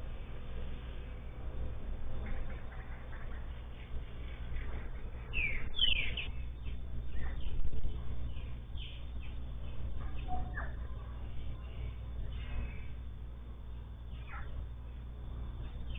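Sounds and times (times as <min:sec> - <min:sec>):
steady low hum: 0:00.0 - 0:15.9
high falling chirp calls: 0:05.3 - 0:07.6.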